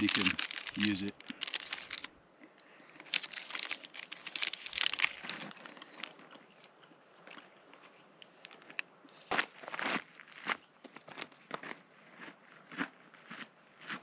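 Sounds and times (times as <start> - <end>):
plastic wrapper crinkling: 0.0 - 2.2, 2.9 - 6.7.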